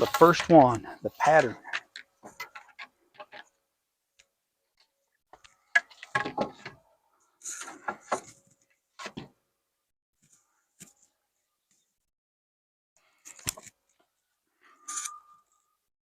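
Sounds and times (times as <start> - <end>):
wooden rafter knocking: 6.1 - 6.7.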